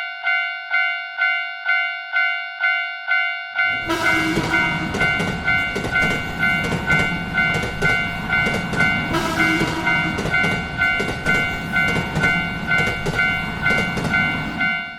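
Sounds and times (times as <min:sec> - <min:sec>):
level-crossing warning bell: 0:00.0 - 0:14.9
train rumbling past: 0:03.7 - 0:14.9.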